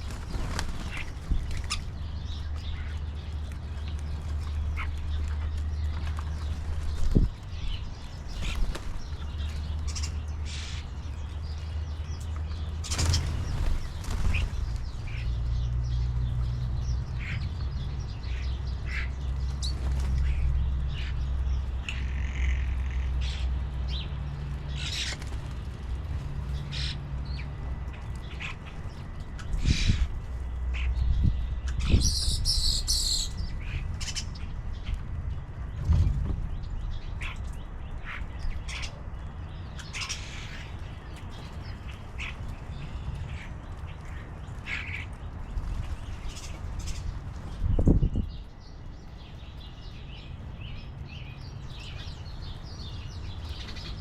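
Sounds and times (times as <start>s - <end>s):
birds chirping: 0.0s - 54.0s
low rumble: 33.3s - 39.8s.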